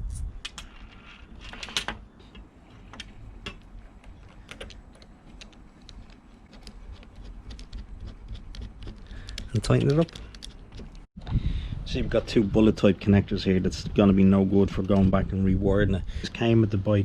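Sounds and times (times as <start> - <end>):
clicks and taps of small parts: 2.4 - 11.0.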